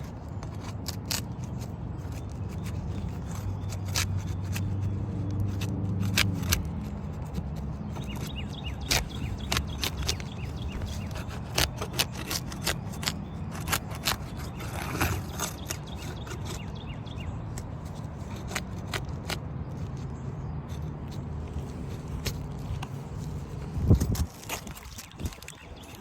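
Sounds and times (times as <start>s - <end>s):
hand tools prying at shingles: 0.0s - 16.8s.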